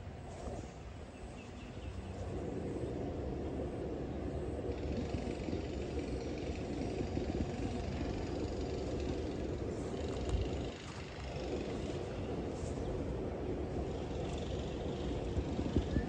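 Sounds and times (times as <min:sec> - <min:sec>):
road traffic rumble: 0:00.0 - 0:16.0.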